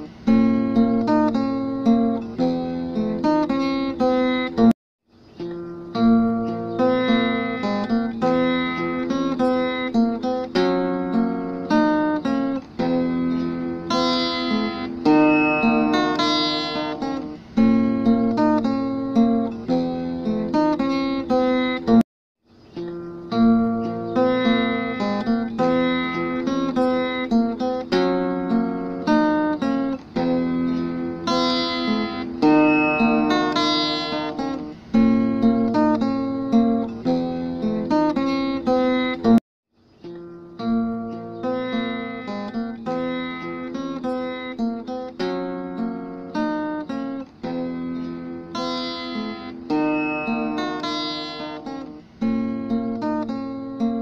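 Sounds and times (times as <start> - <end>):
acoustic guitar melody: 0.0 - 54.0.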